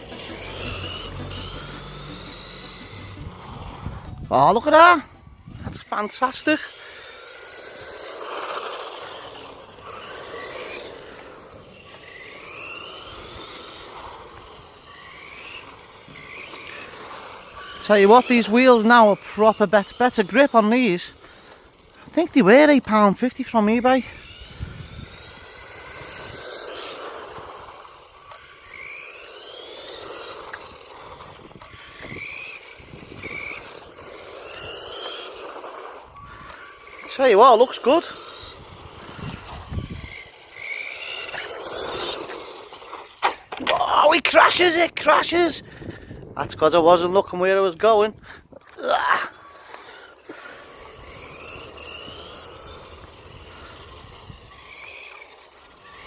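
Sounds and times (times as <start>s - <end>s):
steady rushing noise: 0.0s - 43.5s
electric motor whining: 0.0s - 56.0s
outdoor noise: 0.0s - 56.0s.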